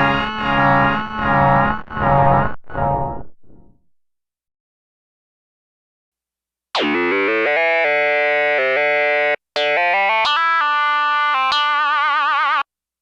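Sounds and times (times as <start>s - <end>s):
synthesizer stepping notes: 0.0s - 3.8s.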